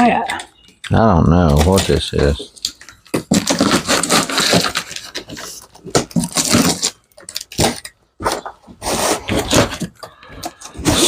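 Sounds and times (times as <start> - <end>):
cardboard package being torn open: 1.6 - 8.0.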